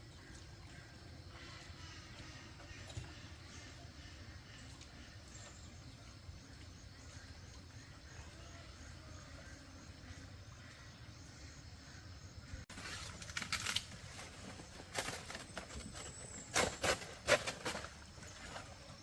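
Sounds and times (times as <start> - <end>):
rustling: 12.7 - 19.0.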